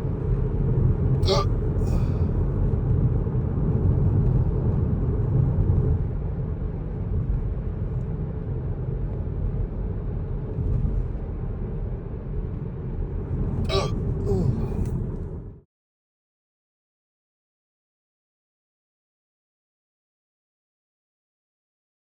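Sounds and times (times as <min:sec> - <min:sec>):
car road and engine rumble: 0:00.0 - 0:15.6.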